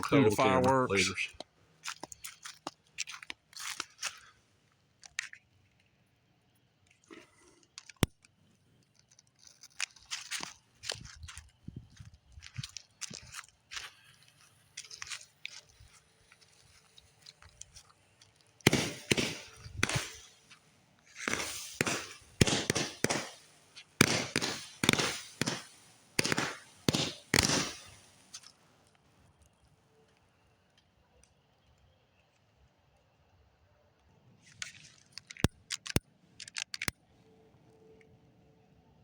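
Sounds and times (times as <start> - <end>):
fireworks bangs: 18.7 - 20.4, 21.2 - 28.1.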